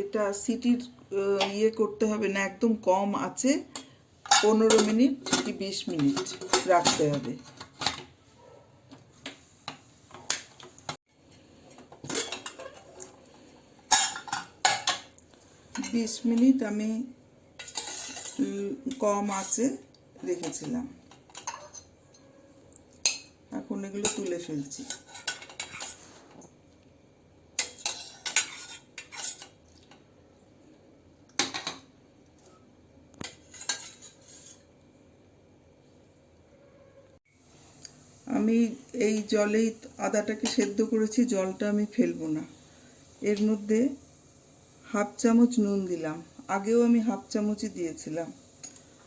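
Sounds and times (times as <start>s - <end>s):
metal cookware clinking and clattering: 3.7s - 8.1s, 11.9s - 13.2s, 13.9s - 15.1s, 17.6s - 19.7s, 20.4s - 21.9s, 24.0s - 26.0s, 27.6s - 29.6s, 31.4s - 31.8s, 33.2s - 34.6s
spoon scraping metal pot: 17.6s - 19.8s, 24.0s - 26.3s, 27.6s - 29.5s, 33.3s - 34.7s.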